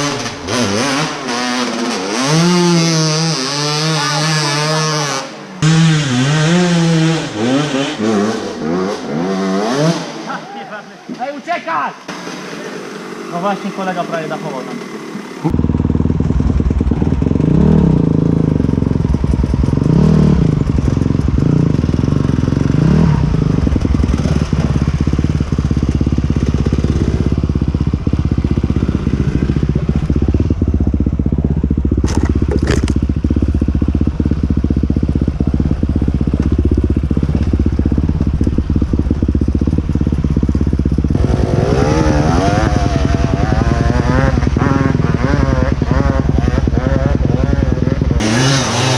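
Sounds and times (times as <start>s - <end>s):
motorcycle engine revving: 0.0s - 10.6s, 12.1s - 48.9s.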